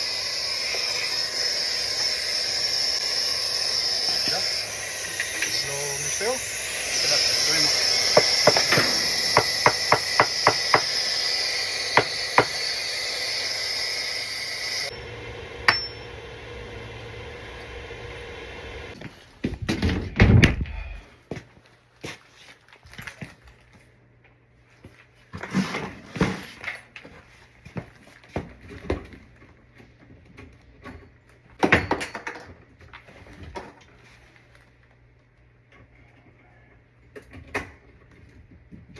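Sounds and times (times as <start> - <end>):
machine hum: 0.0 - 19.0
tools clattering and knocking: 30.2 - 32.8.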